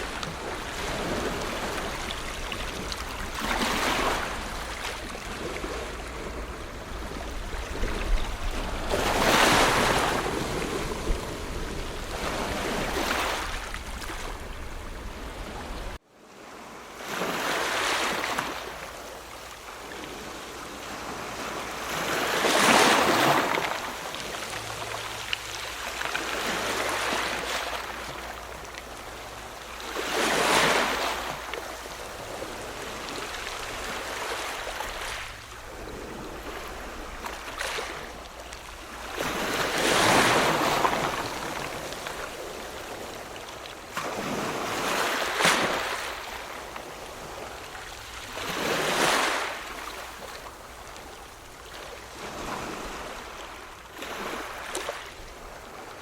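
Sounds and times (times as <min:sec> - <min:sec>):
constant wash of water: 0:00.0 - 0:56.0
waves breaking: 0:00.0 - 0:56.0.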